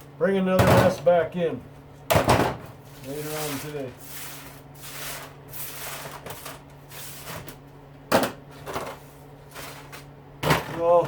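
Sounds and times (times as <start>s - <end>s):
steady low hum: 0.0s - 11.0s
rustling and scraping: 2.6s - 7.8s, 8.5s - 10.9s
scrap parts and tools handled: 2.8s - 7.6s, 8.5s - 10.9s.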